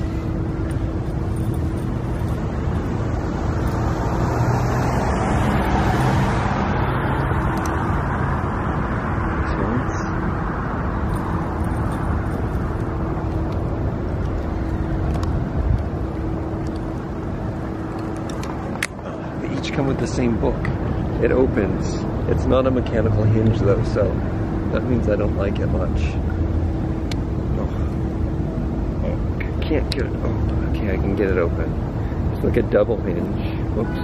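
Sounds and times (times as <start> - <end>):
vehicle passing close: 0.0 - 25.0
roadway traffic hum: 0.0 - 34.0.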